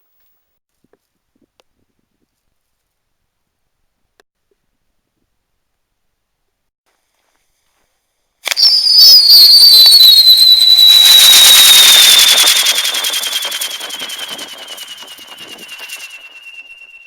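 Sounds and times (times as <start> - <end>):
firework high falling whistle: 8.5 - 17.0
firework igniting crack: 8.5 - 17.0
hissing pulsing firework spray: 8.5 - 17.0.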